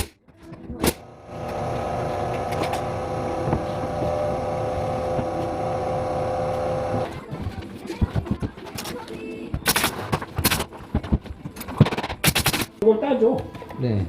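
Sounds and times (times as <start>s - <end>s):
electric motor humming: 1.0s - 7.1s.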